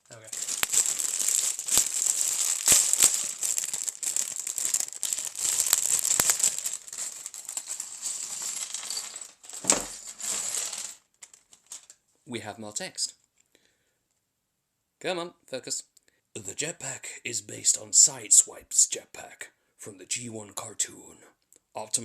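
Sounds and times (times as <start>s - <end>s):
plastic bag crinkling: 0.0s - 12.0s
plastic pieces rattling: 0.1s - 11.9s.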